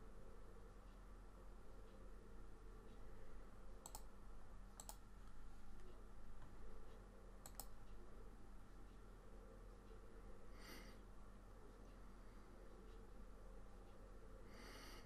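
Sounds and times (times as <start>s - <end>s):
faint electrical hum: 0.0s - 15.0s
computer mouse clicking: 3.8s - 4.2s, 4.8s - 5.0s, 7.4s - 8.0s.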